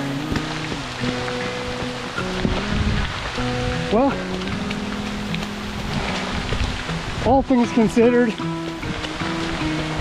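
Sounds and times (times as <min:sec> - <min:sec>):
background music with held notes: 0:00.0 - 0:10.0
heavy rain hissing: 0:00.0 - 0:10.0.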